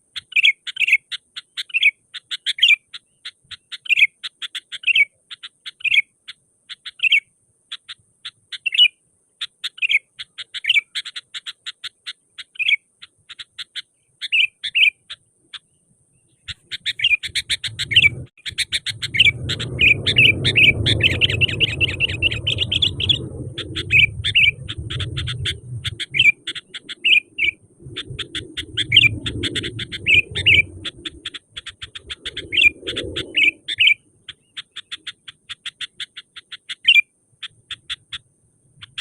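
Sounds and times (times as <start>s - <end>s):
bird chirping and warbling: 0.0s - 39.0s
low rumbling noise: 17.4s - 34.2s.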